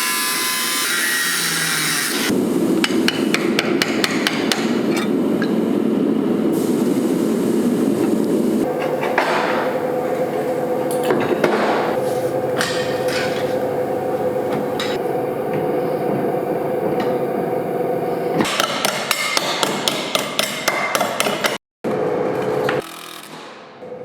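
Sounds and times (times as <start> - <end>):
hammer strikes on metal: 2.8 - 4.8, 18.4 - 21.6.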